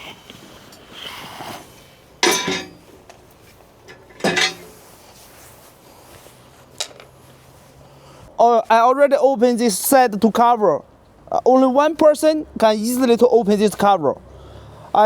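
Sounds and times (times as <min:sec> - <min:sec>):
metal panel clanks: 0:02.2 - 0:03.0, 0:03.8 - 0:04.8.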